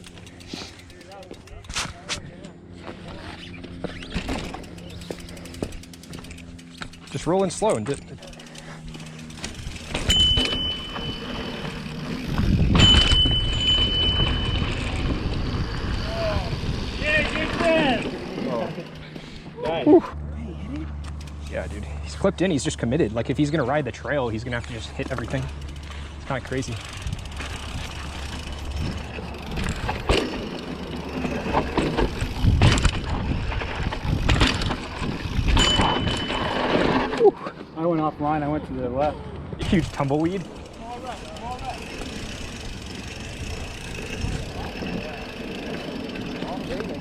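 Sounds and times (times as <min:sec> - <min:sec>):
bike tyres rolling on dirt: 0:00.0 - 0:19.8, 0:20.9 - 0:37.2, 0:39.6 - 0:47.0
disc brakes squealing: 0:03.1 - 0:05.4
wind rumble: 0:09.5 - 0:18.4, 0:26.7 - 0:37.2.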